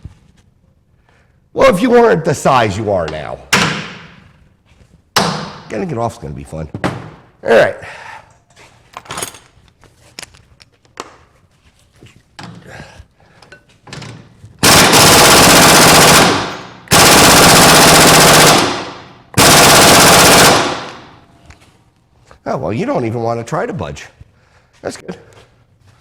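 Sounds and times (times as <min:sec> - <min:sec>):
tool handling clicks: 0:08.9 - 0:10.4.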